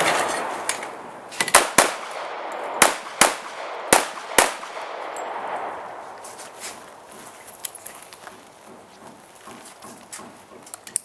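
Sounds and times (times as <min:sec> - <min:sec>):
pistol shots with echo: 0:00.0 - 0:06.1.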